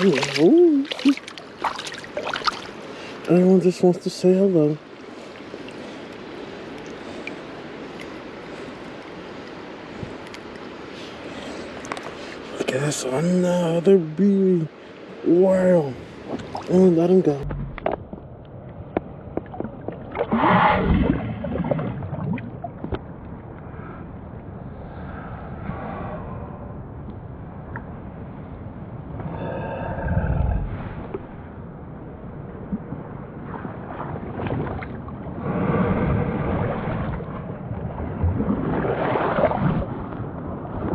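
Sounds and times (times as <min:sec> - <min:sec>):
water splashing and sloshing: 0:00.0 - 0:13.4, 0:14.7 - 0:23.7, 0:32.5 - 0:40.9.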